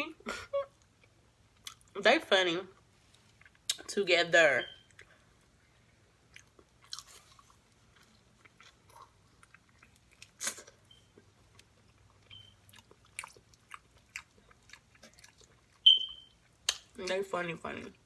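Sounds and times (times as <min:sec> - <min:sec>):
chewing and biting food: 0:06.3 - 0:17.0.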